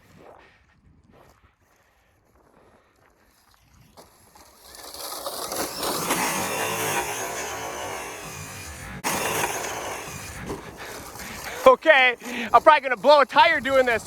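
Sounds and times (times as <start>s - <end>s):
tyres grinding over gravel: 4.0s - 14.0s
electric motor whining: 4.7s - 14.0s.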